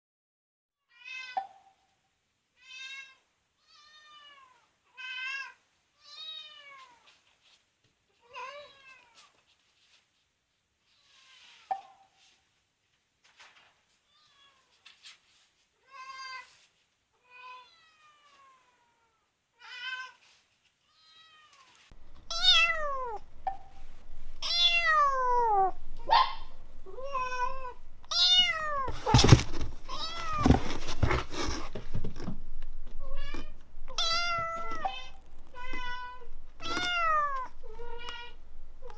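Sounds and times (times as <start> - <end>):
cat meowing: 22.0 - 31.8, 32.9 - 38.9
knocks: 22.0 - 38.9
steady background hiss: 22.0 - 38.9.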